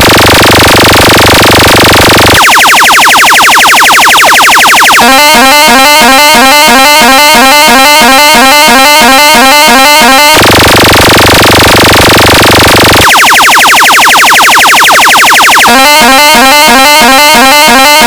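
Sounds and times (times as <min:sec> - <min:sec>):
buzzing pulsed tone: 0:00.0 - 0:18.0
rising synth chirps: 0:00.0 - 0:18.0
distorted bass buzz: 0:05.2 - 0:13.0.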